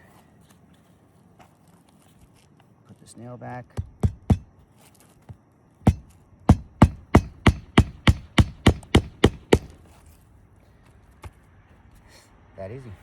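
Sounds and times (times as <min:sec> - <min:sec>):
hammer striking a nail: 0:03.7 - 0:04.6, 0:05.9 - 0:09.8.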